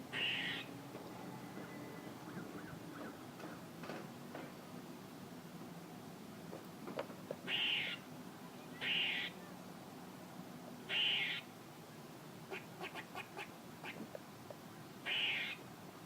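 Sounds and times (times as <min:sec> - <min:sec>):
squirrel raspy calls: 0:00.1 - 0:00.7, 0:07.5 - 0:08.0, 0:08.8 - 0:09.4, 0:10.9 - 0:11.5, 0:12.5 - 0:14.1, 0:15.0 - 0:15.6.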